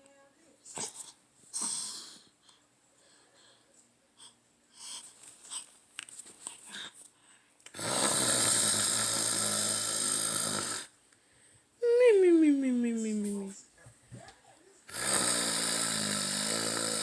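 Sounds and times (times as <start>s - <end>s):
faint breaths: 0.8s - 7.6s, 11.1s - 11.8s
loud buzzing snore: 7.8s - 11.0s, 14.9s - 17.0s.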